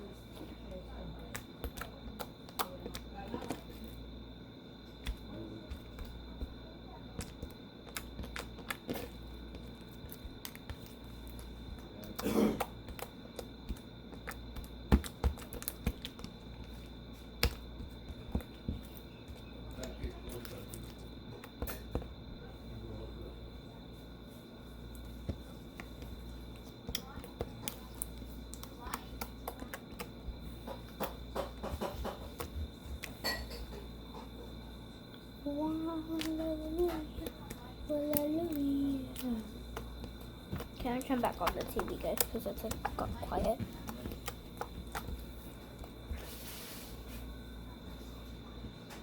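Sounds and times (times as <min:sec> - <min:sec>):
slime clicking and popping: 0:01.2 - 0:03.6, 0:07.2 - 0:11.4, 0:12.0 - 0:16.6, 0:26.6 - 0:30.2, 0:36.1 - 0:45.3.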